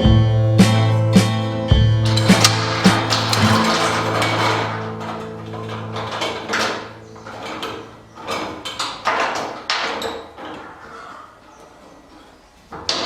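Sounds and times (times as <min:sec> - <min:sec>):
sharp knocks: 0:02.0 - 0:10.9
parts scraping and sliding: 0:02.1 - 0:13.0.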